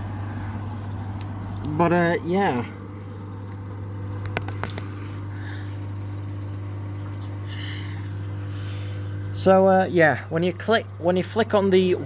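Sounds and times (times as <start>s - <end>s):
washing machine humming: 0.0s - 12.0s
sharp clicks: 3.4s - 4.9s.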